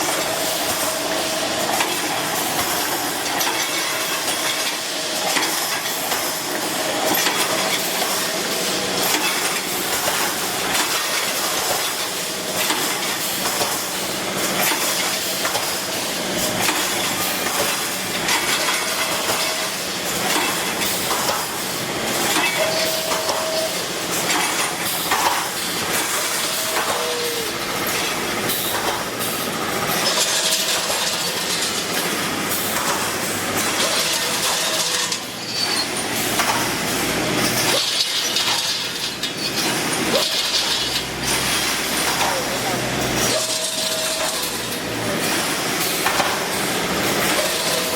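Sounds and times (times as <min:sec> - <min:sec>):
machine clattering and clicks: 0:00.0 - 0:27.0, 0:27.6 - 0:47.9
welding machine hissing: 0:00.0 - 0:47.9
high-pitched whines: 0:22.4 - 0:23.8, 0:25.9 - 0:29.0.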